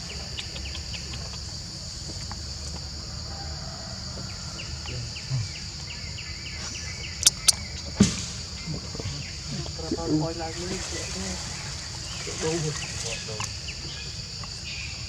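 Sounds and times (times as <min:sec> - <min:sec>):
high insect drone: 0:00.0 - 0:15.0
faint short chirps: 0:07.2 - 0:07.6
sharp clicks: 0:07.2 - 0:07.6.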